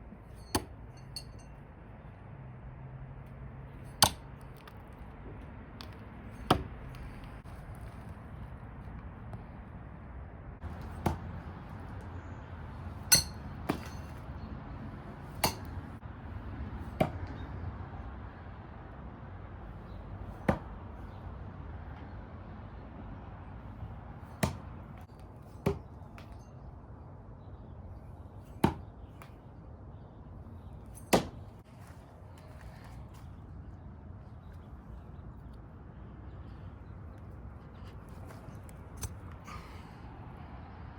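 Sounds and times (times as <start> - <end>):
throwing knives striking a target: 0.2 - 1.5, 3.8 - 4.8, 5.8 - 7.2, 10.7 - 11.5, 12.9 - 14.4, 15.2 - 16.0, 24.3 - 26.5, 28.4 - 29.4, 30.9 - 31.6, 38.3 - 39.7.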